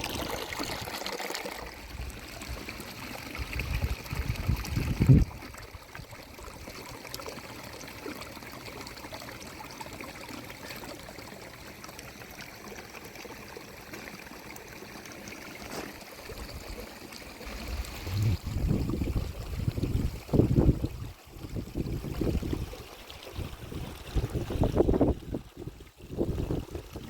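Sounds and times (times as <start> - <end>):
running water: 0.0 - 27.0
low rumbling: 17.5 - 20.1.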